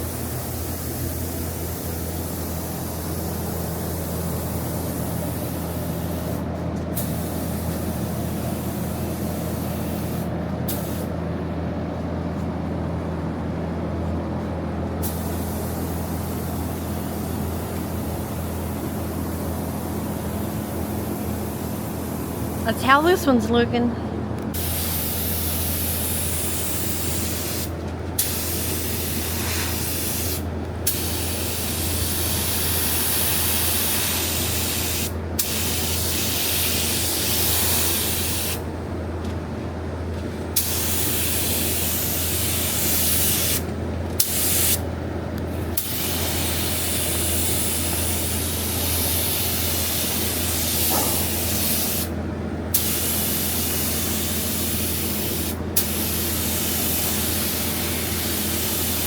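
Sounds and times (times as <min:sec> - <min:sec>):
spray gun hissing: 0:07.0 - 0:07.9, 0:15.0 - 0:17.4, 0:24.6 - 0:38.6, 0:40.6 - 0:43.6, 0:45.8 - 0:52.1, 0:52.7 - 0:59.0.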